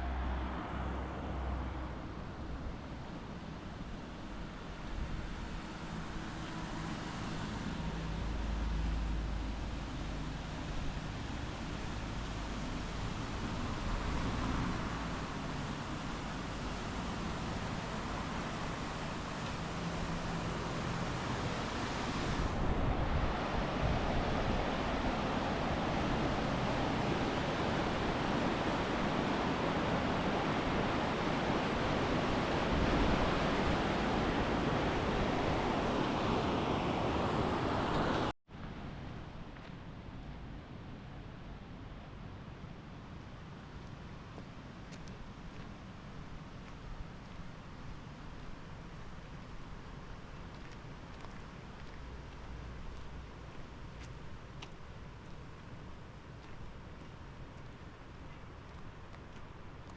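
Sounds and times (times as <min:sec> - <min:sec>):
rush of flowing water: 0:00.0 - 0:38.4, 0:42.2 - 0:59.9
steady rushing noise: 0:11.2 - 0:39.4.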